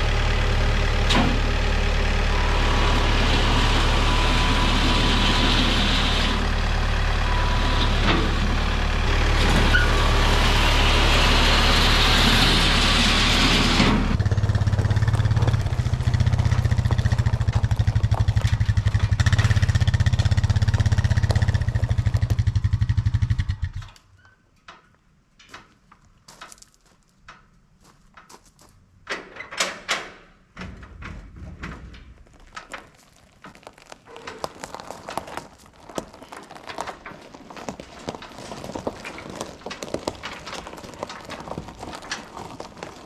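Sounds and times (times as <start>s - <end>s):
patter of small clicks and rustles: 32.0s - 43.0s.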